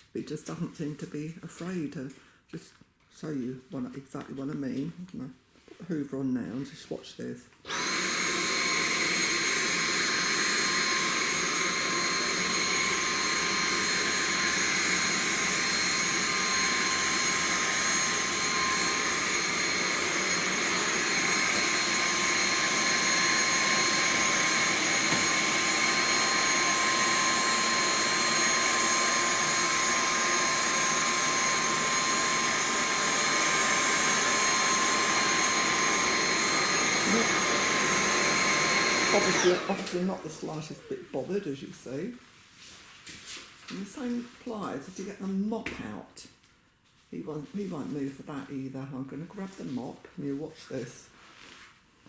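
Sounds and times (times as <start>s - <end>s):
vacuum cleaner running: 7.7s - 42.1s.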